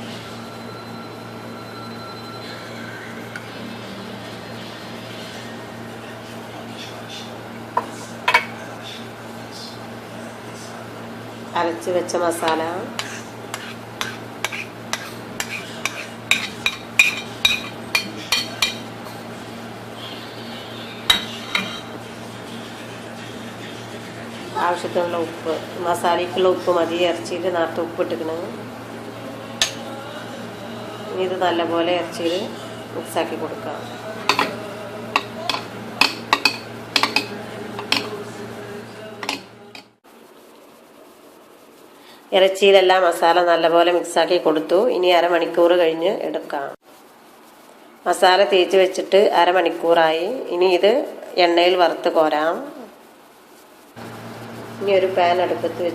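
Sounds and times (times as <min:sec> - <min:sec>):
low steady hum: 0:00.0 - 0:46.2
metal spoon clinking on steel vessel: 0:15.0 - 0:18.8, 0:29.6 - 0:29.8, 0:34.3 - 0:38.2, 0:39.2 - 0:39.9.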